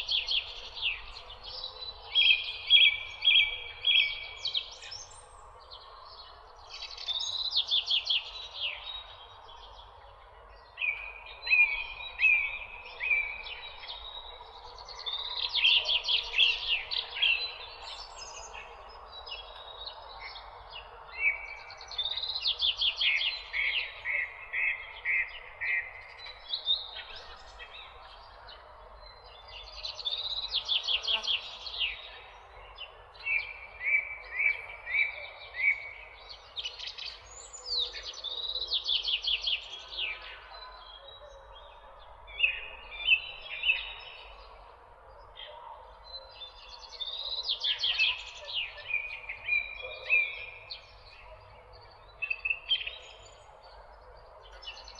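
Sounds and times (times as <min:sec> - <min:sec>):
songbirds singing: 0:00.0 - 0:54.9.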